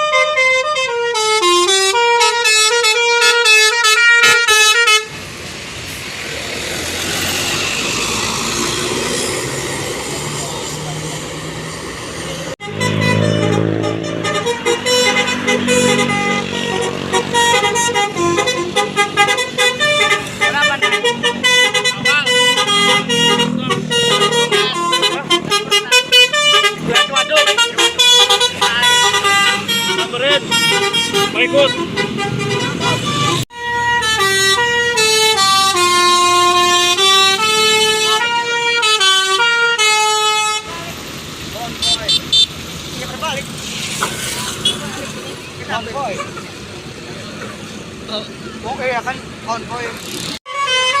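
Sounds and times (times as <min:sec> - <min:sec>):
melodic bus horn: 0:00.0 - 0:05.2, 0:12.4 - 0:41.0, 0:41.6 - 0:42.6, 0:50.4 - 0:51.0.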